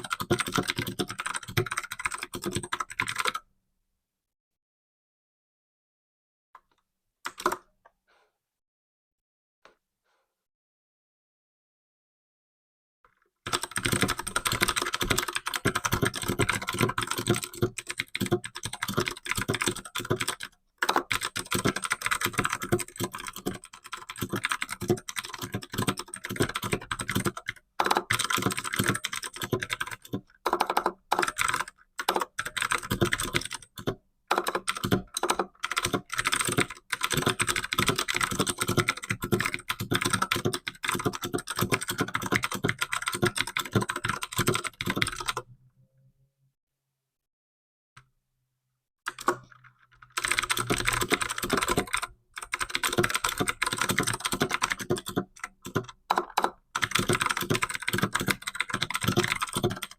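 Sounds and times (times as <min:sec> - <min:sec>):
fast typing on computer keyboard: 0:00.0 - 0:03.4, 0:13.5 - 0:45.4, 0:49.1 - 0:59.9.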